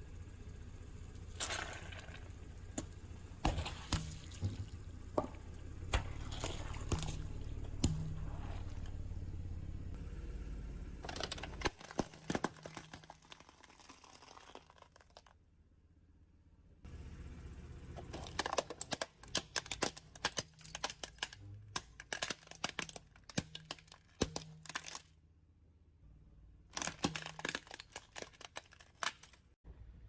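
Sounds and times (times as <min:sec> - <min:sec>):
low rumble: 0:00.0 - 0:11.6
tyre crushing brittle things: 0:11.0 - 0:15.4, 0:18.0 - 0:25.2, 0:26.7 - 0:29.6.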